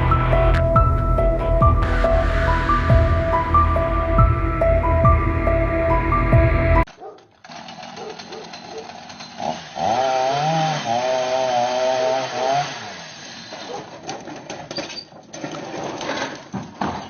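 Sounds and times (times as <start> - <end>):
scattered cracks and knocks: 6.9 - 9.4, 13.7 - 17.0
chainsaw running at high revs: 7.5 - 13.7.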